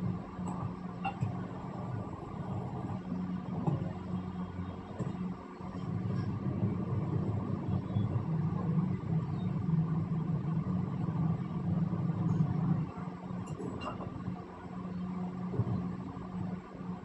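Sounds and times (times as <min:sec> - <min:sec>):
machine low hum: 0:00.0 - 0:17.0.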